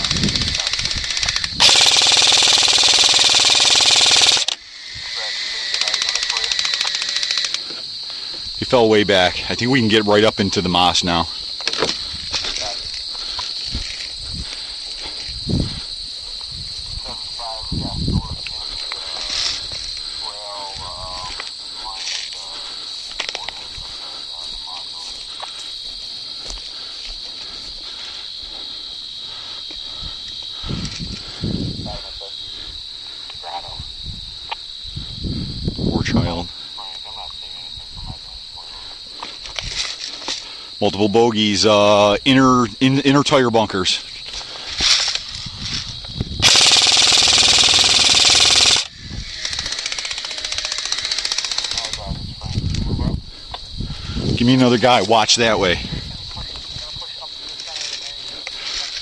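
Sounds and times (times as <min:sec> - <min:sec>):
airsoft gun full-auto burst: 0:00.0 - 0:04.6, 0:05.7 - 0:07.6, 0:46.4 - 0:51.9
crickets and insects chirping: 0:00.0 - 0:59.0.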